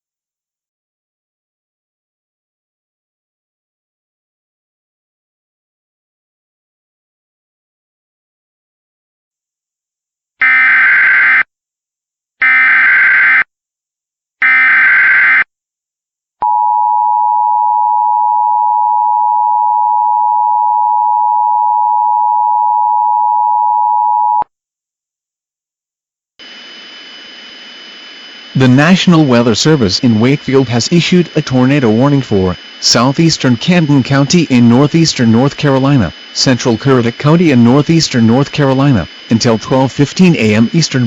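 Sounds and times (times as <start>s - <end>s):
steady shrill two-tone signal: 10.4s - 11.5s, 14.4s - 15.5s, 26.4s - 41.0s
warbling data bursts: 26.4s - 41.0s.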